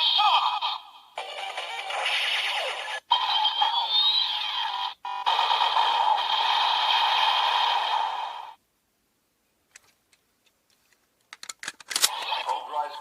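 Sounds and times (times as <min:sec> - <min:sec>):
synthesized toy blast effect: 0:05.2 - 0:08.6.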